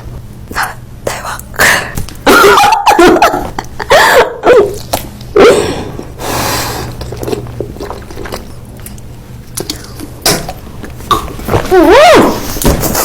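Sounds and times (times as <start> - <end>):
bites and mouth noises: 4.5 - 13.0.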